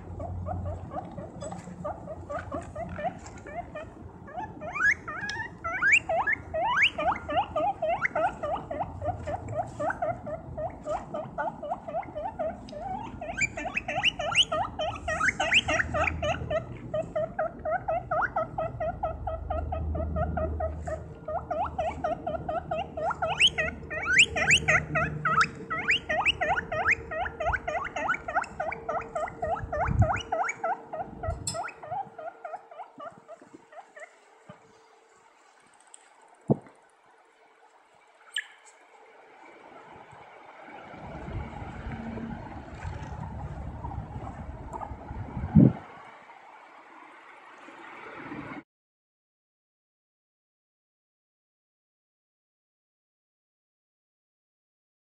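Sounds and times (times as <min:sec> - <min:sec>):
guinea pig squeaking: 0:00.0 - 0:34.7, 0:38.3 - 0:38.8, 0:42.7 - 0:45.2.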